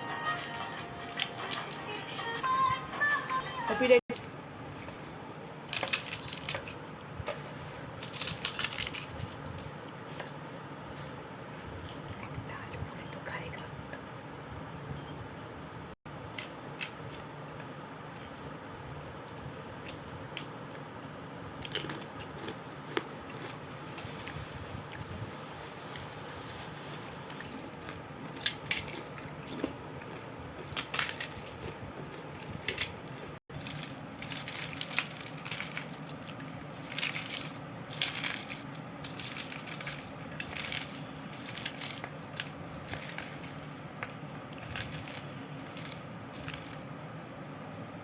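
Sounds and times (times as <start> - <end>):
steady background hum: 0.0 - 48.0
crisp shells crackling and crunching: 5.3 - 9.8, 21.4 - 46.9.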